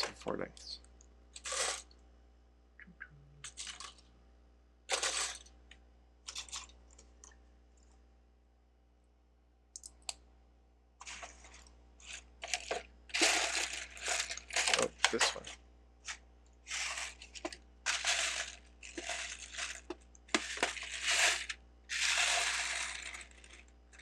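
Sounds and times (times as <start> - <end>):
plastic bricks clicking and clattering: 12.0 - 15.5, 16.7 - 24.0.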